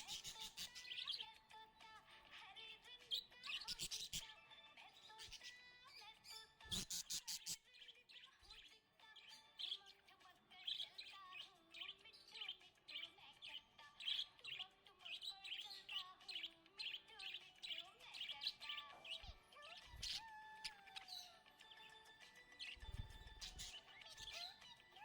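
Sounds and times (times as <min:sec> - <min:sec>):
budgerigar chirping: 0:00.0 - 0:01.2, 0:03.4 - 0:04.2, 0:06.7 - 0:07.6, 0:15.3 - 0:21.3, 0:22.7 - 0:24.7
faint background music: 0:00.0 - 0:25.0.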